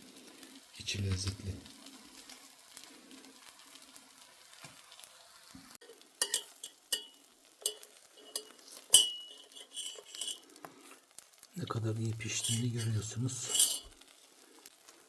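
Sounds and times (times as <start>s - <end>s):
metal utensils clinking on dish: 5.8s - 10.4s, 12.3s - 14.1s.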